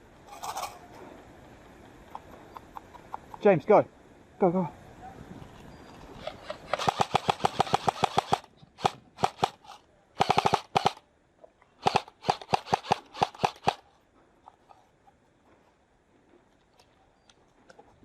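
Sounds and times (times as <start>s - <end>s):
airsoft guns firing: 6.5s - 11.0s, 11.8s - 13.8s.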